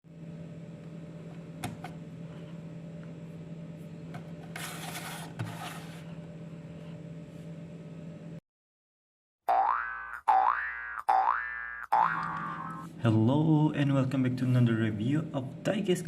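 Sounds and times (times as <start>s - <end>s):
steady low hum: 0.1s - 8.4s, 12.0s - 16.0s.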